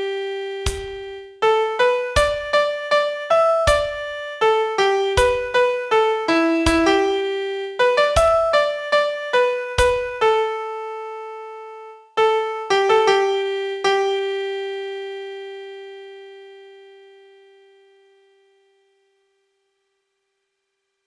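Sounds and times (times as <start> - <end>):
low beat thump: 0.7 - 1.0, 2.2 - 2.5, 3.7 - 4.0, 5.2 - 5.5, 6.7 - 6.9, 8.2 - 8.5
piano notes: 0.7 - 14.2.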